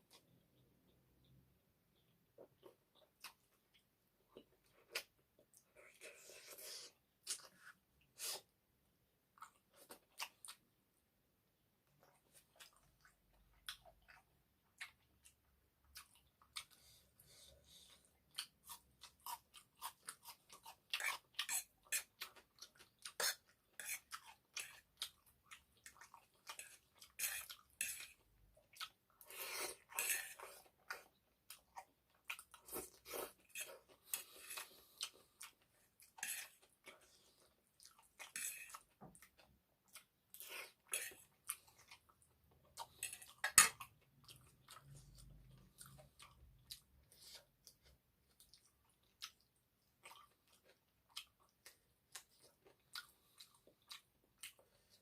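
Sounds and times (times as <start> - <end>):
chewing with mouth clicks: 11.9 - 55.0.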